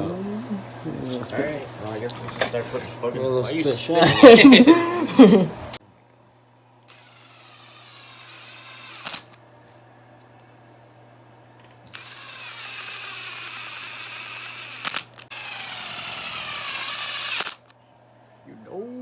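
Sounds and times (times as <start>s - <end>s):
power drill motor whine: 6.9s - 9.4s, 11.9s - 17.7s.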